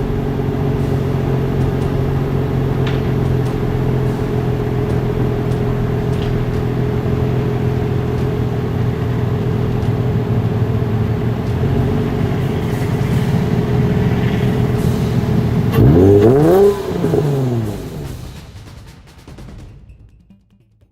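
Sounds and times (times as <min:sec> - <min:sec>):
quick engine rev: 0:00.0 - 0:18.4
car engine idling: 0:00.0 - 0:18.7.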